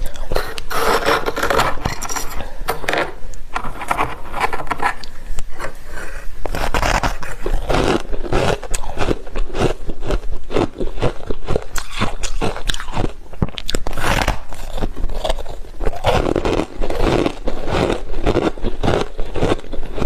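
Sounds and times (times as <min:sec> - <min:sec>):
chewing and crunching ice: 0:06.4 - 0:20.0.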